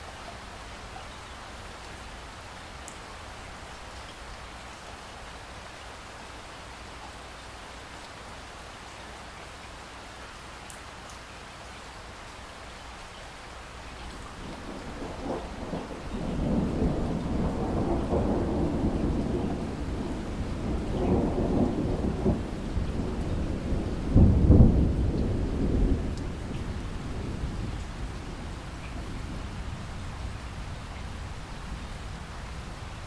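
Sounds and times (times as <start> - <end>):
steady rain: 0.0 - 33.0
thunder rolling: 14.3 - 32.8.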